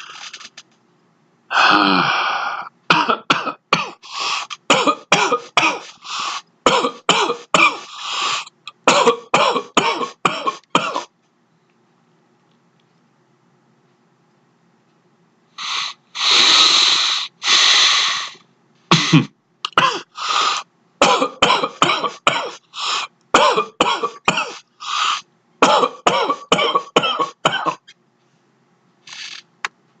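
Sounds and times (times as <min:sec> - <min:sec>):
long breaths: 0:01.5 - 0:02.7, 0:22.7 - 0:23.1
person coughing: 0:01.5 - 0:06.0, 0:06.6 - 0:07.9, 0:08.7 - 0:11.1, 0:18.9 - 0:20.2, 0:21.0 - 0:27.9.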